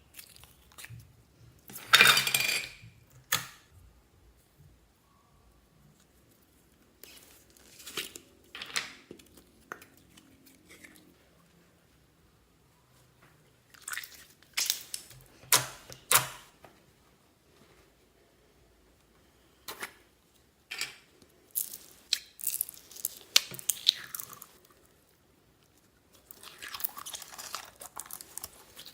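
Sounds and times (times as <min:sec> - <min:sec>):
slime crackling and popping: 0:26.2 - 0:28.9.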